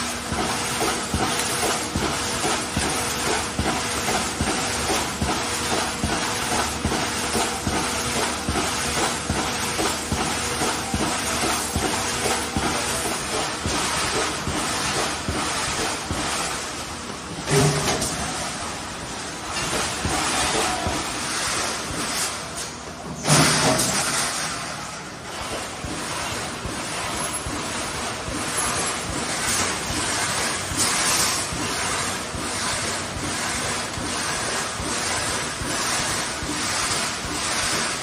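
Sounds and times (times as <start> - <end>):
welding machine crackling noise: 0.0 - 16.8
machine clunk: 17.4 - 18.7, 21.8 - 31.8.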